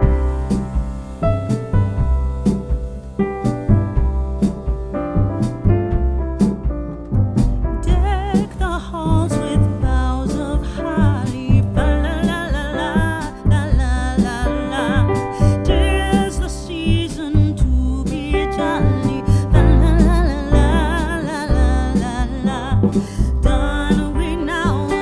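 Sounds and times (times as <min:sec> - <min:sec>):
bass and drums: 0:00.0 - 0:25.0
person singing: 0:07.9 - 0:25.0.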